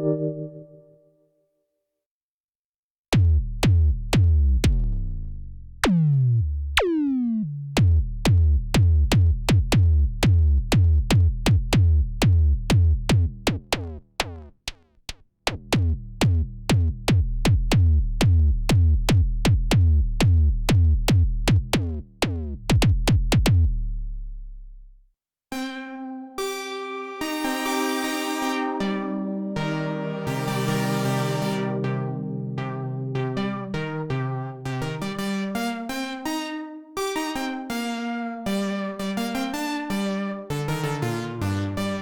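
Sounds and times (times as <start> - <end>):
synthesizer bass sequence: 0.0 - 0.8, 25.5 - 42.0.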